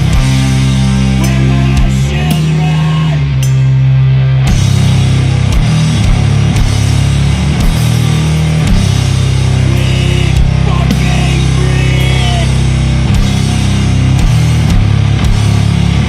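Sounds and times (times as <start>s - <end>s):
distorted guitars and bass: 0.0s - 16.0s
heavy drum hits: 4.5s - 16.0s.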